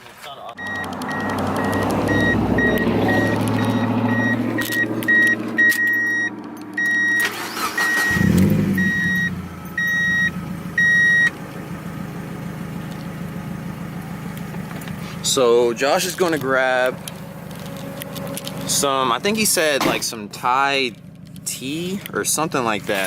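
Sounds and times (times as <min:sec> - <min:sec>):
dashboard warning chime beeps: 0:00.6 - 0:11.3
car engine starting and idling: 0:00.6 - 0:23.0.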